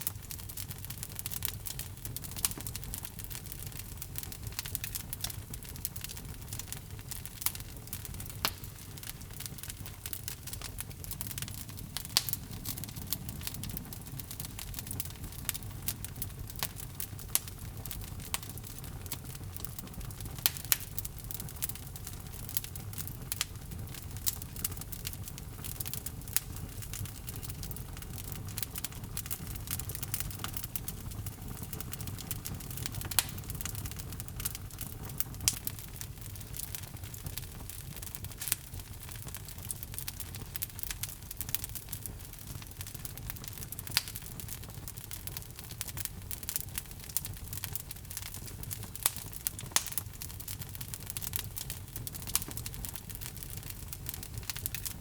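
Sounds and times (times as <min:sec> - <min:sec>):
fire popping: 0:00.0 - 0:55.0
log fire crackling: 0:00.0 - 0:55.0.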